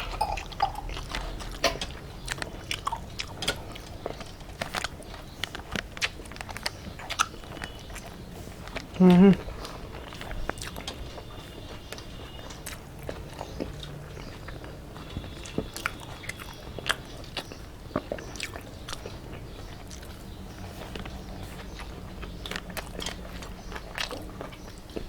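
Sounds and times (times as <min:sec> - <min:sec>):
mouth clicks and smacks: 0:00.0 - 0:10.9
chewing and biting food: 0:00.0 - 0:25.0.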